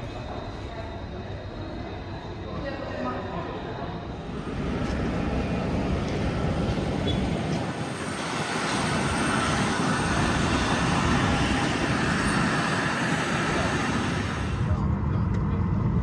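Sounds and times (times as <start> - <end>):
jet engines roaring in cabin: 3.7 - 16.0.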